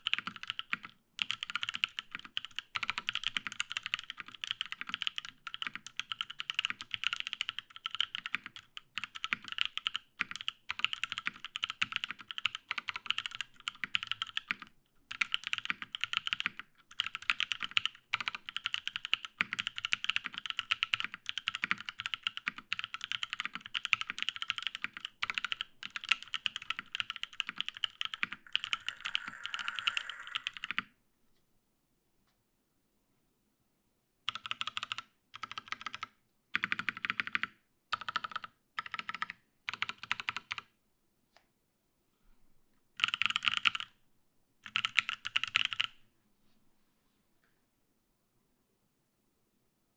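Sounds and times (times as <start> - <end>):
fast mechanical keyboard typing: 0.0 - 30.9, 34.3 - 40.6, 43.0 - 43.9, 44.6 - 46.0.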